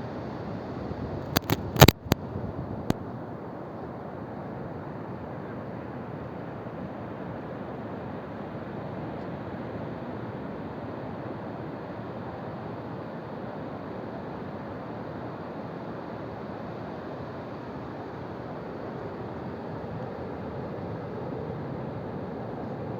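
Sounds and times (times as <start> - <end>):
wind: 0.0 - 22.9.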